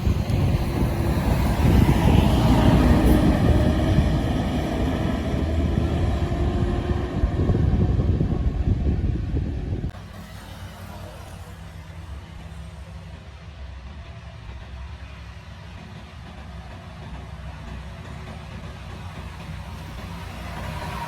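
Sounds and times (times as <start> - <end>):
wind buffeting microphone: 0.0 - 10.0
bus engine and road rumble: 0.0 - 15.4.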